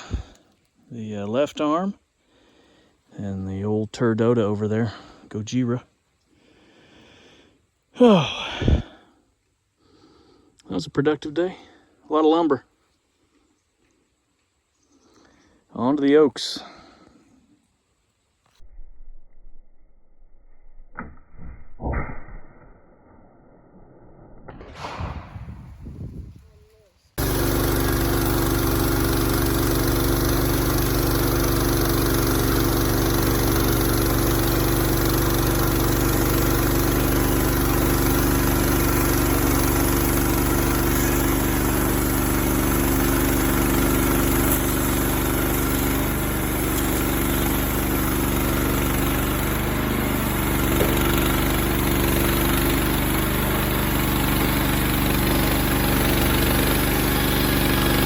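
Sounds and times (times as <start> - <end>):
engine running: 27.2 - 58.0.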